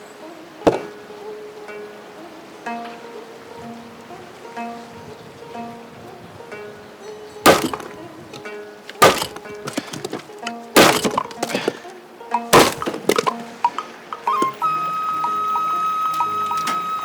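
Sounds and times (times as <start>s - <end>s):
knife chopping on wooden board: 0.7s - 0.9s.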